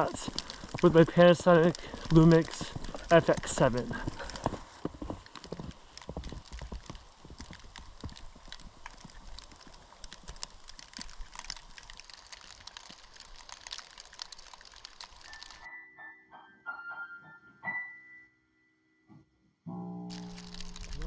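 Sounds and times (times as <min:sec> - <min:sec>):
crackle of small clicks: 0:00.0 - 0:15.7, 0:20.1 - 0:21.0
footsteps crunching in wet snow: 0:00.0 - 0:15.7.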